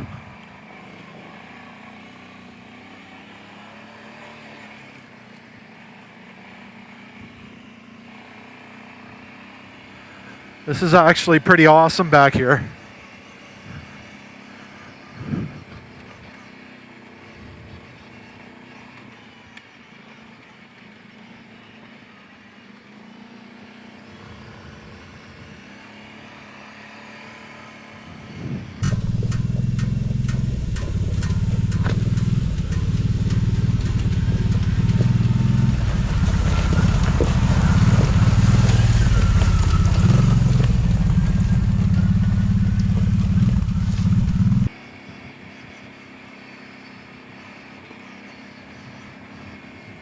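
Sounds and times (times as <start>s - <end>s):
atv engine rumbling: 0.0s - 20.5s, 23.0s - 44.7s
sharp clicks: 28.8s - 35.2s.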